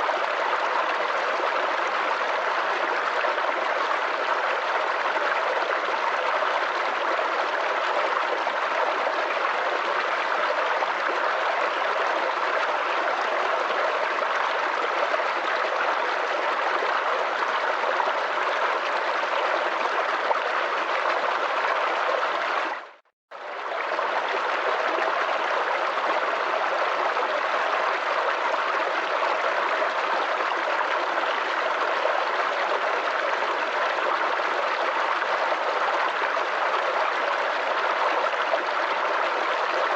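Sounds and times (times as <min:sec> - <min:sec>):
creek babbling over stones: 0:00.0 - 0:39.9.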